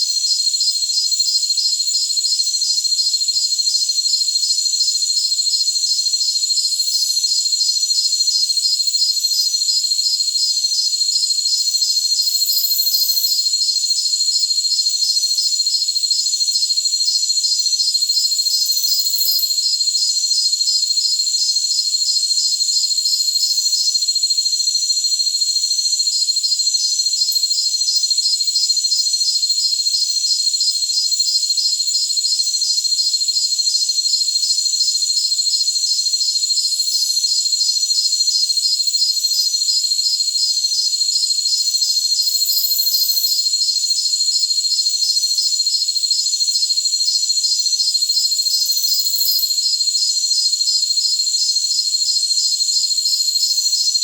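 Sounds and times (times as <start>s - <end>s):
crickets trilling: 0.0s - 54.0s
rapid pulse of cricket chirps: 0.2s - 54.0s.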